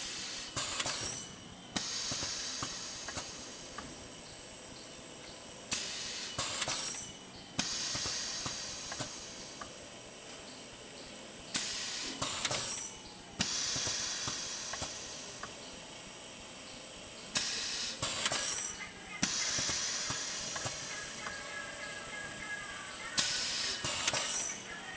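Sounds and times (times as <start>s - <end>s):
air hiss bursts: 1.8s - 3.8s, 5.7s - 7.0s, 7.6s - 9.6s, 11.5s - 12.8s, 13.4s - 15.4s, 17.3s - 21.2s, 23.2s - 24.6s.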